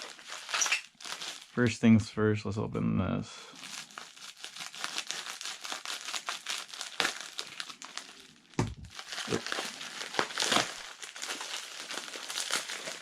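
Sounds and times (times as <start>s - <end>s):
packaging crinkling: 0.0s - 1.6s, 3.5s - 13.0s
packaging tearing: 0.0s - 1.6s, 3.6s - 13.0s
handling knocks: 8.6s - 8.9s.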